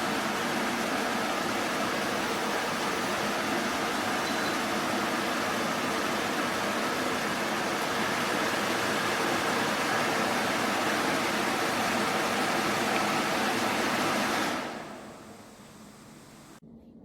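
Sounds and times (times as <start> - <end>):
air conditioner blowing air: 0.0 - 16.7.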